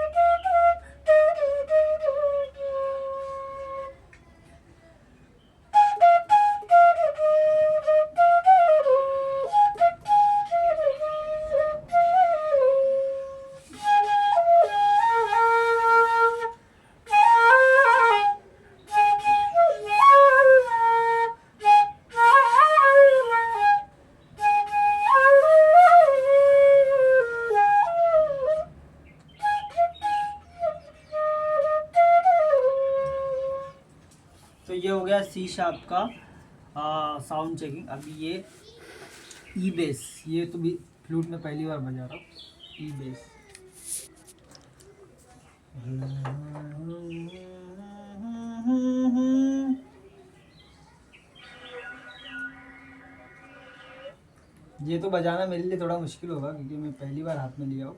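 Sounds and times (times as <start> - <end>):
bamboo flute melody: 0.0 - 4.3, 5.6 - 34.1, 51.4 - 54.2.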